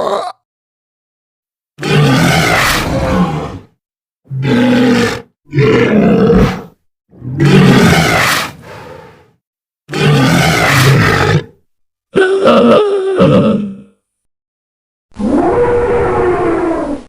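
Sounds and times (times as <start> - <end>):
creature growling roars: 1.8 - 14.0, 15.2 - 17.0.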